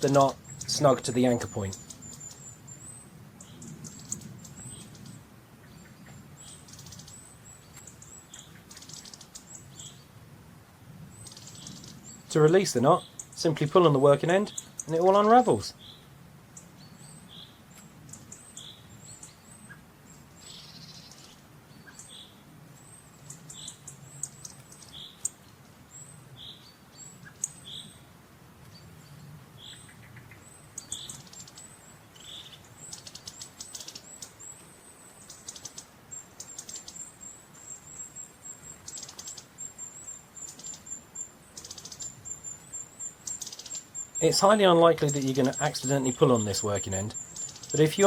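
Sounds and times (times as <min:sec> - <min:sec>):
high bird trill: 0:00.0 - 0:05.2, 0:11.1 - 0:16.0, 0:29.6 - 0:48.0
small birds singing: 0:00.0 - 0:48.0.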